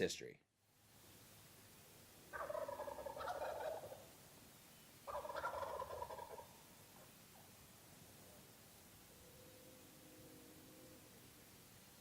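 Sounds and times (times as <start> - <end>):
turkey gobbling: 2.3 - 4.1, 5.0 - 7.5.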